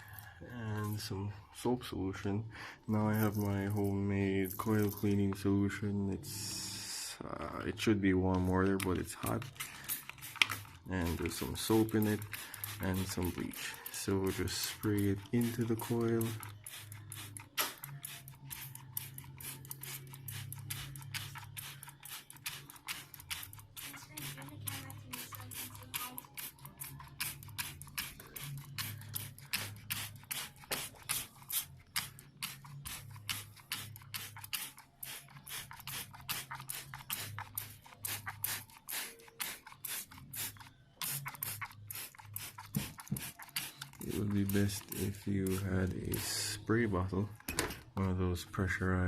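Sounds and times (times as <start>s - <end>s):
spray bottle squirting: 8.3s - 47.1s.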